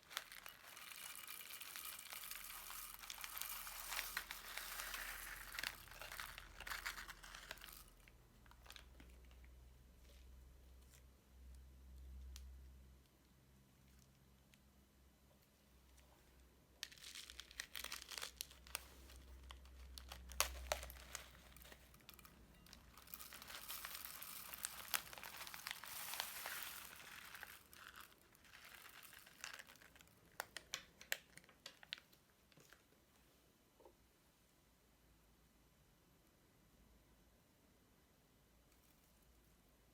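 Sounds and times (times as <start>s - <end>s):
crunchy slime crackling: 16.8s - 32.0s.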